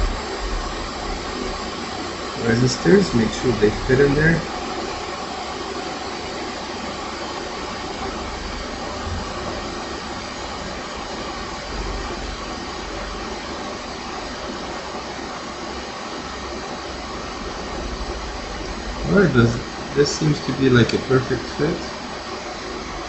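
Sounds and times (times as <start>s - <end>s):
low rumble: 0.0s - 1.7s
fan whooshing hiss: 0.0s - 23.0s.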